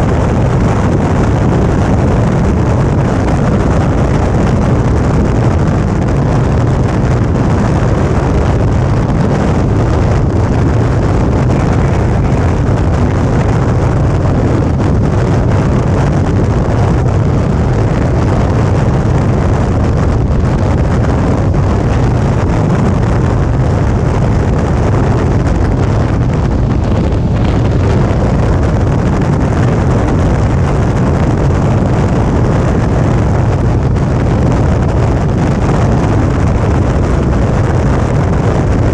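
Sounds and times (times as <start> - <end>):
motorcycle engine cruising: 0.0 - 38.9
wind rush on microphone: 0.0 - 38.9.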